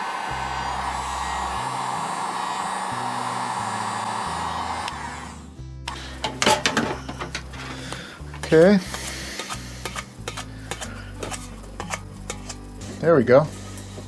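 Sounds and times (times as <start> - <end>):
hot-air blower running: 0.0 - 9.6.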